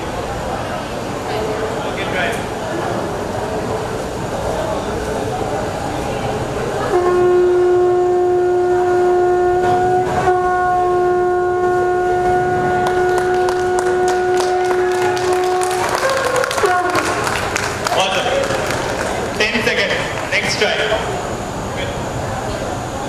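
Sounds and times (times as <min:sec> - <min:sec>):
conch shell blown: 0:06.8 - 0:17.8.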